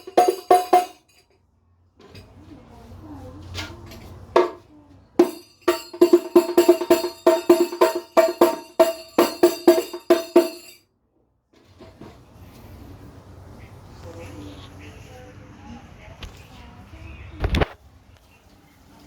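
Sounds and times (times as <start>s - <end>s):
frame drum struck by hand: 0.0s - 1.0s, 4.4s - 4.6s, 5.2s - 10.8s.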